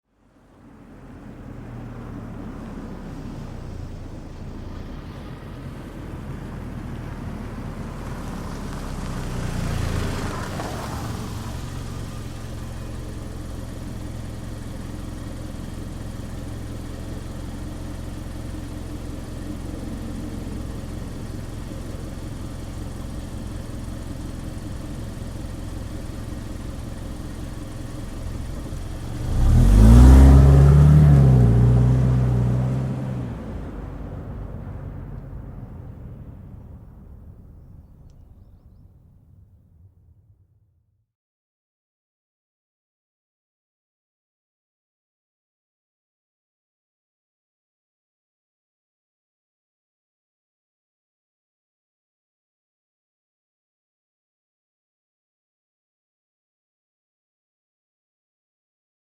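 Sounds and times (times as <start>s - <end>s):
car engine idling: 0.1s - 40.1s
car engine revving and accelerating: 0.4s - 38.4s.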